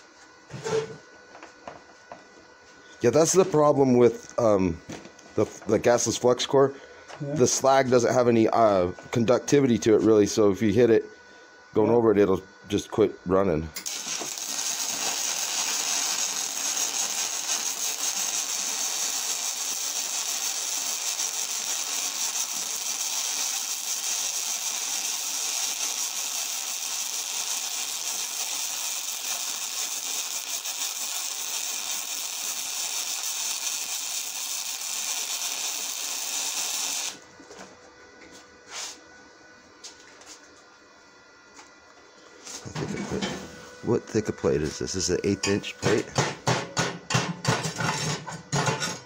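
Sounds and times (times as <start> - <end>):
welding arc crackling hiss: 13.8 - 37.2.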